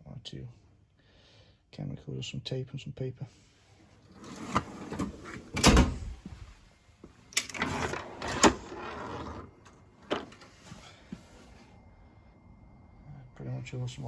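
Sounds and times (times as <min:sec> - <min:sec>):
metal drawers sliding on runners: 0:04.2 - 0:06.2, 0:07.4 - 0:10.8
drawer shutting with a bang: 0:04.2 - 0:06.3, 0:07.5 - 0:10.4
drawer thud: 0:04.2 - 0:06.4, 0:07.5 - 0:09.4.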